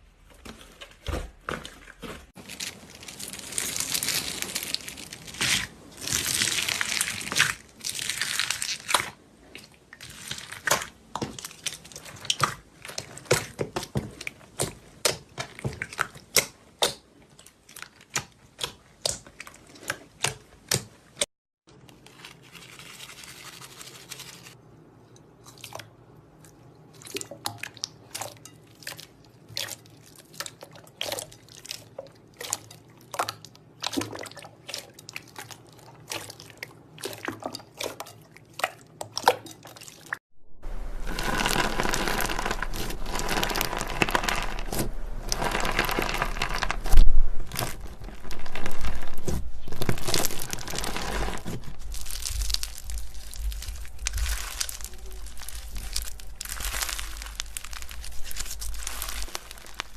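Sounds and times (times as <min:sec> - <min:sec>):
slime crackling and crunching: 0:00.6 - 0:20.8, 0:39.6 - 0:59.9.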